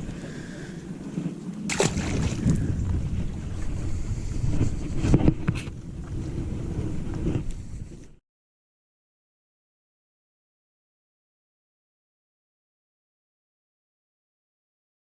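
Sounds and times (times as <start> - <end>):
water moving around hull: 0.0 - 8.2
wind buffeting microphone: 0.0 - 8.2.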